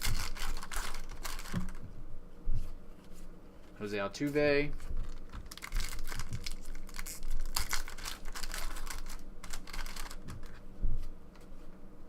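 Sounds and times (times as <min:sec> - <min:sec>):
cards flipped clicking and rustling: 0:05.1 - 0:10.6.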